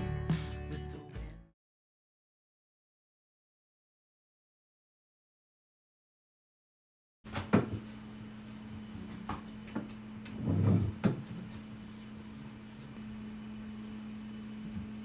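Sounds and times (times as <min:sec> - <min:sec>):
steady low hum: 0:07.8 - 0:15.0
short rub: 0:10.8 - 0:15.0.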